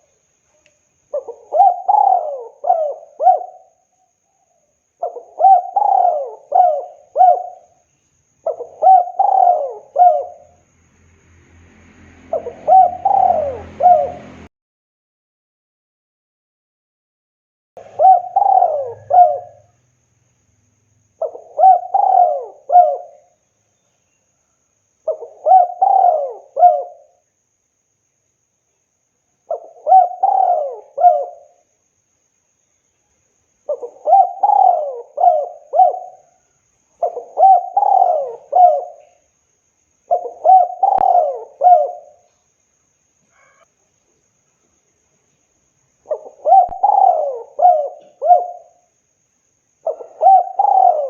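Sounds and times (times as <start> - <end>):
dove cooing: 1.1 - 3.8, 5.0 - 7.8, 8.4 - 10.6, 12.3 - 14.5, 17.8 - 19.8, 21.2 - 23.4, 25.1 - 27.2, 29.5 - 31.6, 33.7 - 36.4, 37.0 - 39.2, 40.1 - 42.3, 46.1 - 48.9, 49.8 - 51.0.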